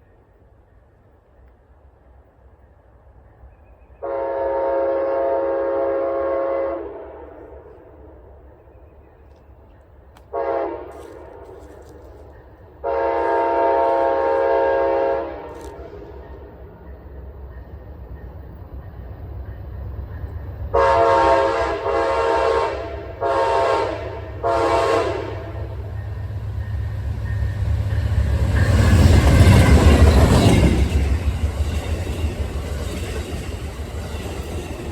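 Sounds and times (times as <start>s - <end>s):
train rumble: 0.0s - 34.9s
locomotive air horn blasts: 4.0s - 7.7s, 10.3s - 11.8s, 12.8s - 15.9s, 20.7s - 25.8s.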